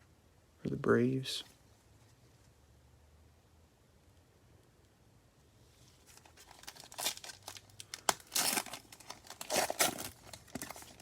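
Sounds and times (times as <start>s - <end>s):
wrapper crinkling and ripping: 6.0s - 11.0s.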